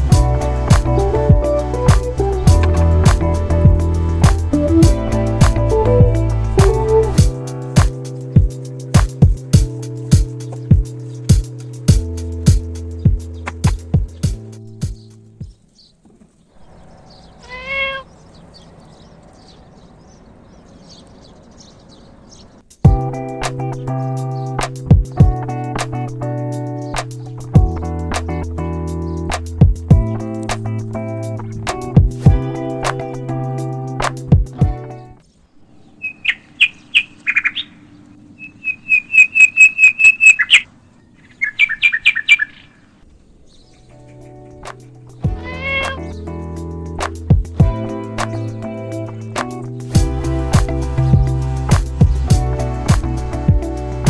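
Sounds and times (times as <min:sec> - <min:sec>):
faint high-pitched chirping: 0:00.0 - 0:54.0
cat meowing: 0:17.4 - 0:18.1, 0:45.4 - 0:46.2.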